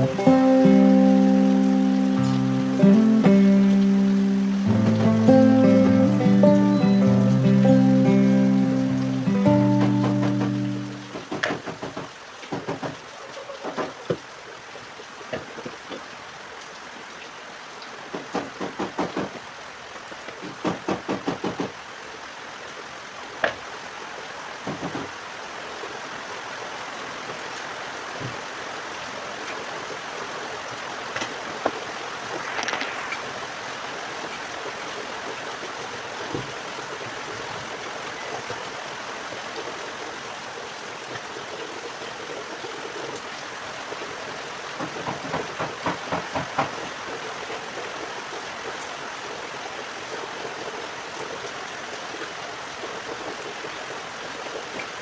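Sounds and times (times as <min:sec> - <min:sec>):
heavy rain rushing: 0:00.0 - 0:12.4, 0:27.0 - 0:48.8
knocks: 0:44.8 - 0:46.8.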